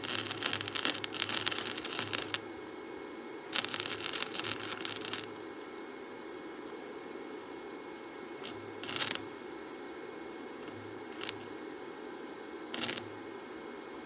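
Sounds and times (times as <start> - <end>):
arc welding crackle: 0.0 - 5.8, 8.4 - 9.4, 10.6 - 11.7, 12.7 - 13.3
workshop hum: 0.0 - 14.0.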